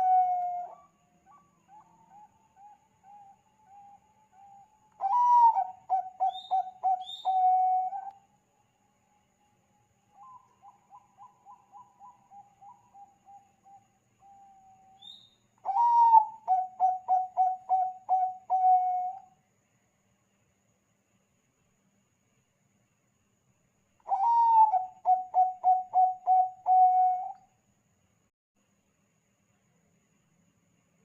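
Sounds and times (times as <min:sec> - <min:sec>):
dove cooing: 0:00.0 - 0:08.1, 0:15.6 - 0:19.2, 0:24.1 - 0:27.4.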